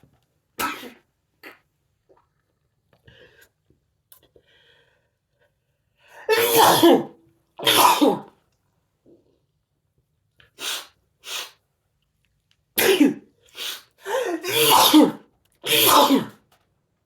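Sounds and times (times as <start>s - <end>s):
person sneezing: 0.6s - 1.6s, 6.2s - 8.4s, 12.8s - 16.4s.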